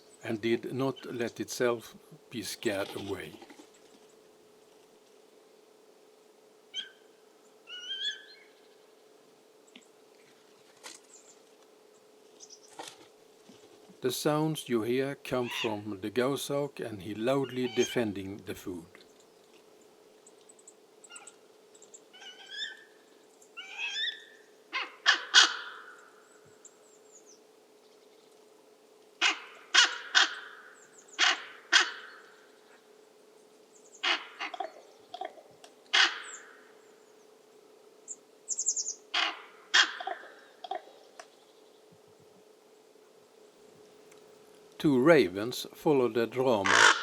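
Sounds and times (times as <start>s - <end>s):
faint steady hum: 0.0s - 47.0s
hawk calling harshly: 23.6s - 25.9s, 29.2s - 30.6s, 31.2s - 32.2s, 34.0s - 34.8s, 35.9s - 36.6s, 38.6s - 40.2s, 46.6s - 47.0s.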